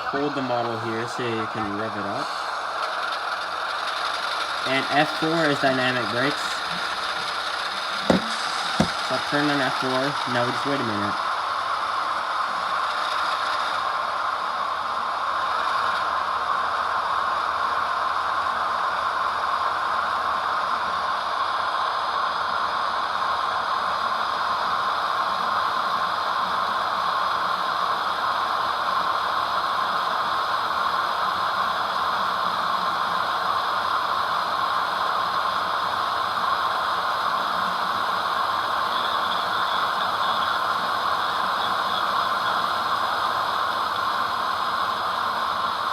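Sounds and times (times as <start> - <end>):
brake blower hiss: 0.0 - 14.1
model locomotive diesel engine sound: 0.0 - 45.9.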